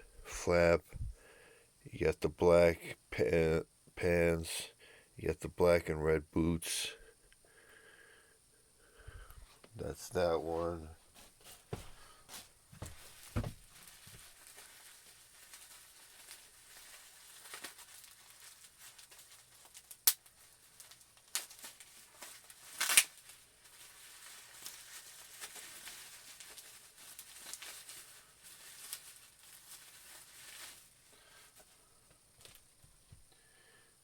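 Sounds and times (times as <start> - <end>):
plastic and cardboard crinkling: 10.4 - 31.8, 32.4 - 33.2.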